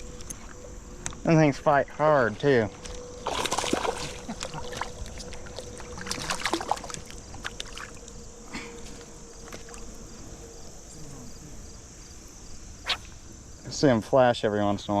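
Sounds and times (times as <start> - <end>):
insects chirring: 0.0 - 15.0
creek water splashing: 3.2 - 10.2.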